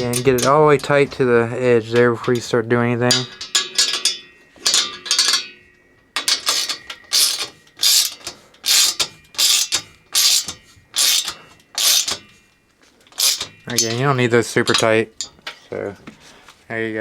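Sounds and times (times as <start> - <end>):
ratchet wrench clicking: 6.2 - 12.4, 13.1 - 14.2.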